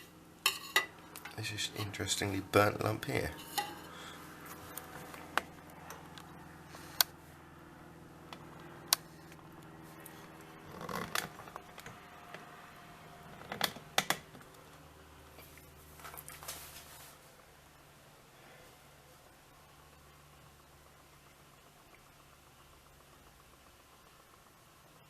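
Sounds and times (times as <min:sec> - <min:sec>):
steady low hum: 0:00.0 - 0:25.0
scraping or rustling: 0:16.0 - 0:17.3.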